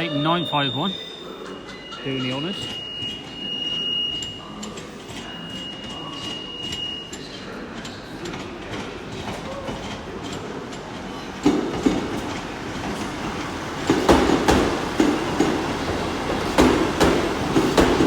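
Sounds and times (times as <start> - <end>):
train wheels clattering over rail joints: 7.8 - 18.0.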